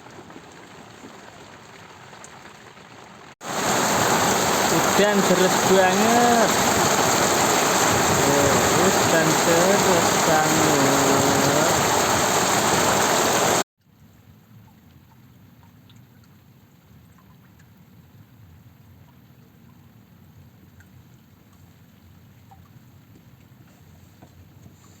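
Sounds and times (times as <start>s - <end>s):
heavy rain pouring: 2.4s - 13.6s.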